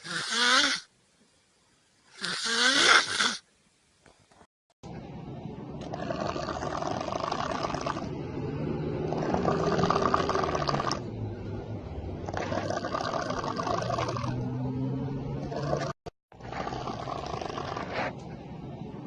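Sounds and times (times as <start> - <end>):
person snoring loudly: 0.0 - 0.9, 2.2 - 3.4, 5.9 - 8.2, 9.0 - 11.0, 12.3 - 14.4, 15.5 - 18.1.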